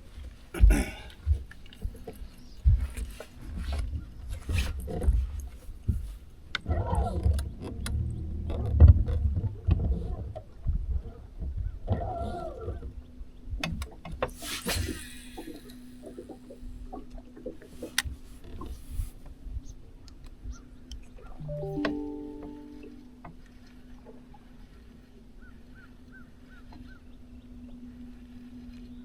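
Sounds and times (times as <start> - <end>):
knocks and thumps on boat deck: 0.6 - 12.1.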